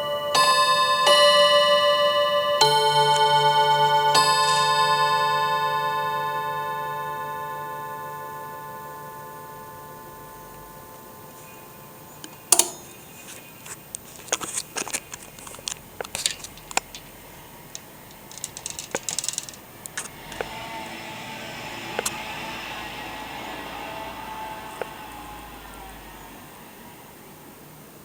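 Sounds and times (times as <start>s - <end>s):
chime bars ringing: 0.0s - 13.1s, 16.1s - 27.3s
steady hiss: 11.3s - 28.0s
sharp clicks and knocks: 12.2s - 20.6s, 22.0s - 22.2s.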